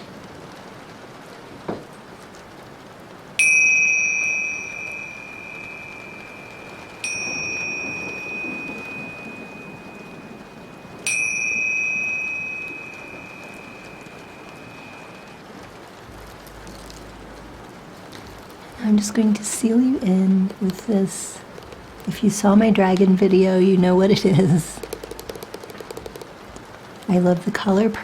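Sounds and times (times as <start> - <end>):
rain patter: 0.0 - 28.0
high-pitched metal chime: 3.4 - 15.4.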